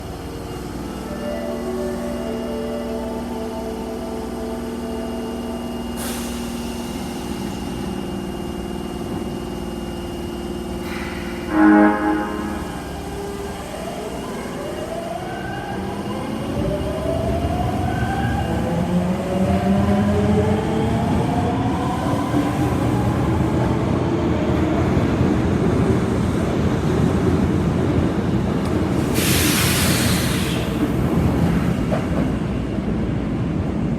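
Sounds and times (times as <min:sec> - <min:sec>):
subway car humming: 0:00.0 - 0:33.9
short hiss of air: 0:29.1 - 0:30.8.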